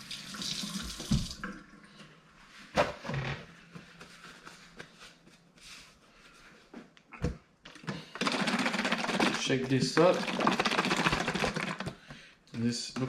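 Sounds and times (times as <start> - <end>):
kitchen tap running: 0.0 - 1.6.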